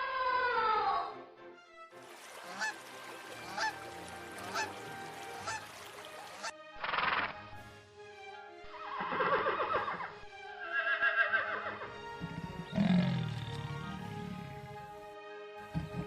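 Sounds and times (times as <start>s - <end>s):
background music: 0.0s - 16.0s
horse whinnying: 8.8s - 14.8s
deep low roar: 12.2s - 14.9s.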